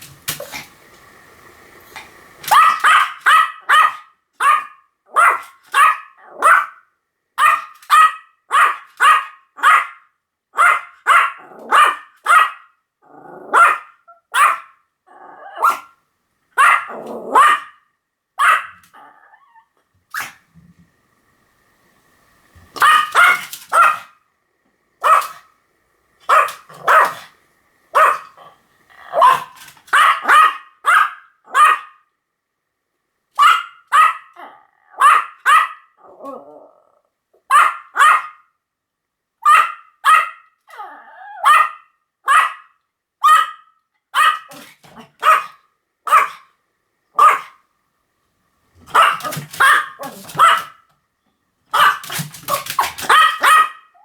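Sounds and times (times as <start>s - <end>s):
small dog yapping: 2.4s - 6.8s, 7.4s - 10.0s, 10.6s - 12.6s, 13.5s - 14.7s, 15.5s - 15.9s, 16.6s - 17.8s, 18.4s - 20.4s, 22.8s - 24.1s, 25.0s - 25.4s, 26.3s - 27.3s, 28.0s - 28.3s, 29.0s - 32.0s, 33.4s - 36.5s, 37.5s - 38.4s, 39.4s - 46.4s, 47.2s - 47.6s, 48.8s - 50.8s, 51.7s - 54.0s
dog growling: 13.0s - 13.7s, 15.1s - 15.8s, 16.9s - 17.5s, 18.9s - 19.6s, 28.2s - 29.6s, 34.4s - 35.1s, 36.0s - 37.1s, 40.7s - 41.5s, 49.0s - 50.5s.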